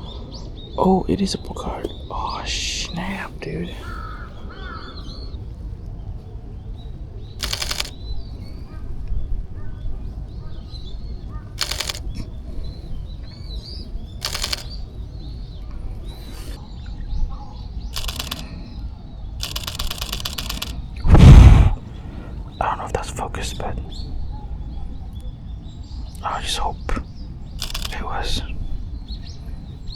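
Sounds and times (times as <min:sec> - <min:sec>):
small birds chirping: 0:00.0 - 0:21.7, 0:22.4 - 0:29.9
camera shutter bursts: 0:07.4 - 0:08.0, 0:11.6 - 0:12.3, 0:14.2 - 0:14.9, 0:18.0 - 0:18.6, 0:19.4 - 0:21.8, 0:27.6 - 0:28.1.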